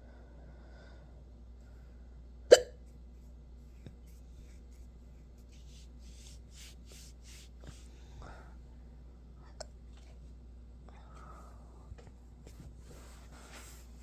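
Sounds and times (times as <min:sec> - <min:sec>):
person hiccuping: 0:02.5 - 0:02.8
soft breathy sounds: 0:03.7 - 0:10.2, 0:10.8 - 0:14.0.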